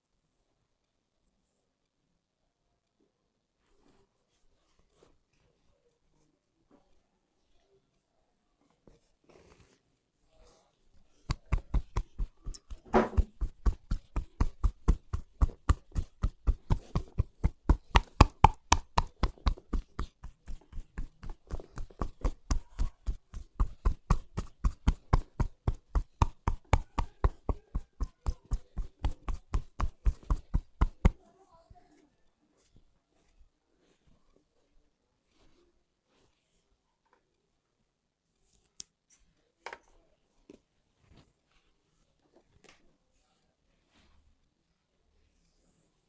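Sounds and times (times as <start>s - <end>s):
hands striking in massage: 11.2s - 31.2s.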